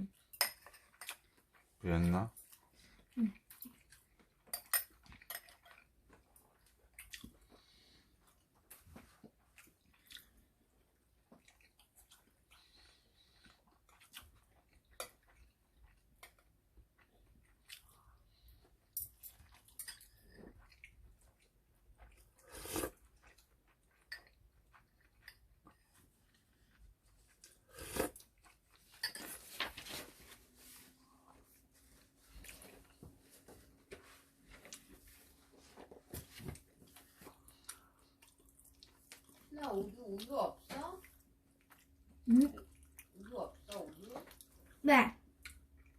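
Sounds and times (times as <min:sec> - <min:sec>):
chewing and biting food: 0:02.5 - 0:07.6, 0:08.2 - 0:18.2, 0:19.2 - 0:28.9.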